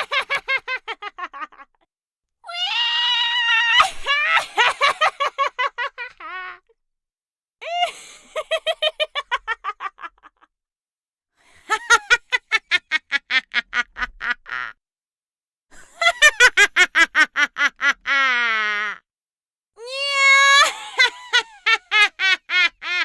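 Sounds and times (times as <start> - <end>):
witch's cackling laugh: 0.0 - 1.8, 3.8 - 6.6, 7.7 - 10.5, 11.7 - 14.8, 15.8 - 19.0, 20.5 - 23.0.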